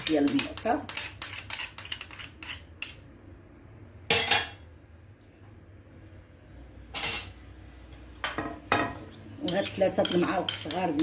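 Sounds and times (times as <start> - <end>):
spoon scraping a dish: 0.0 - 3.0, 9.1 - 11.0
spoon clinking on a dish: 8.4 - 11.0.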